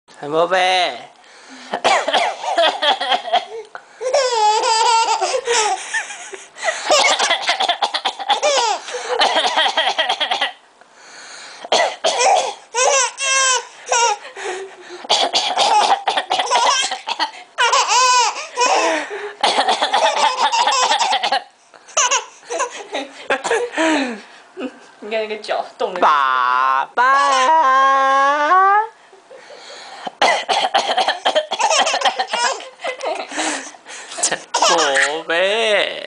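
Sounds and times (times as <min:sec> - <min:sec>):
man coughing: 0:01.8 - 0:03.6, 0:06.9 - 0:10.4, 0:11.7 - 0:12.6, 0:14.9 - 0:17.3, 0:18.6 - 0:21.5, 0:23.3 - 0:24.2, 0:30.2 - 0:32.7, 0:34.2 - 0:35.2
baby laughing: 0:01.8 - 0:10.6, 0:12.2 - 0:23.7, 0:30.8 - 0:33.5, 0:34.1 - 0:35.2.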